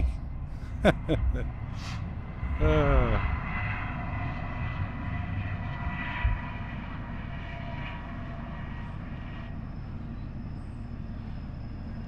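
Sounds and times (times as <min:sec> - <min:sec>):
distant train rumble: 0:00.0 - 0:07.4.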